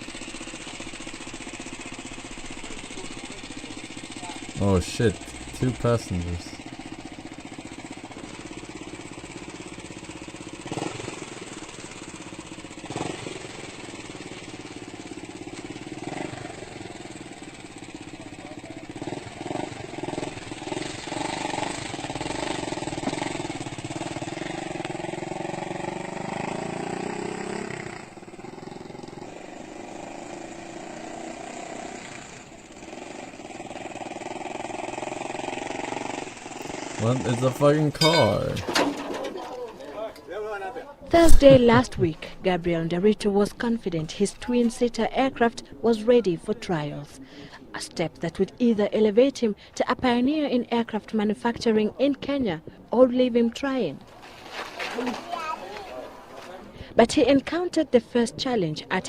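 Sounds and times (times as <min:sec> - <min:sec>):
small engine running: 0:00.0 - 0:39.0.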